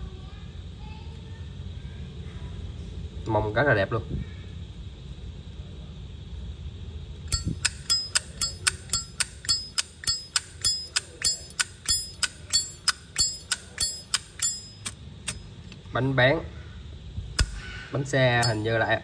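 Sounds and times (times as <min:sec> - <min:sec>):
lighter lid metallic clinks: 0:07.3 - 0:15.4, 0:17.4 - 0:17.7, 0:18.4 - 0:18.7.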